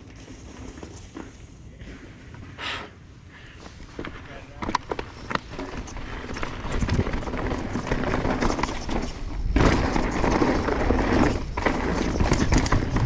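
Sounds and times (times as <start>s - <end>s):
bike clattering over rocks: 3.9s - 13.0s
wind rumble on microphone: 5.3s - 13.0s.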